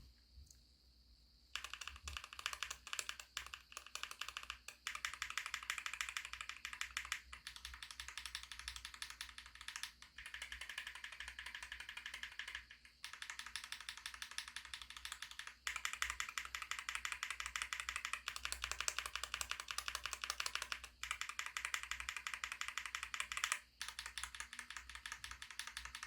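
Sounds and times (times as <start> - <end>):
mechanical keyboard key clacks: 1.6 - 26.0.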